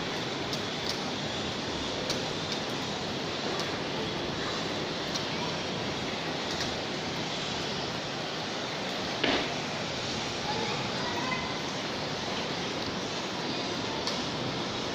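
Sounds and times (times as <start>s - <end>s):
floodwater rushing: 0.0s - 14.9s.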